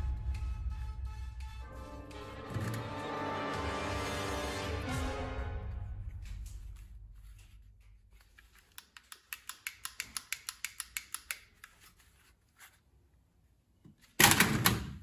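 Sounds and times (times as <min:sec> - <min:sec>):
toy gun mechanism clicking: 0:08.7 - 0:11.5.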